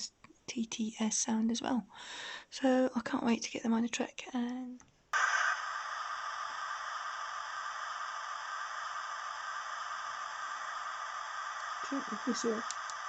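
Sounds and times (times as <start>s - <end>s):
thin steam hiss from small speaker: 5.1s - 13.0s.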